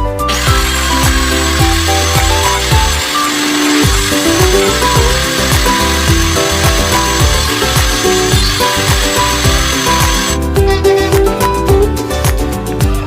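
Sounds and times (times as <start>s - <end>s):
power saw cutting wood: 0.3s - 10.4s.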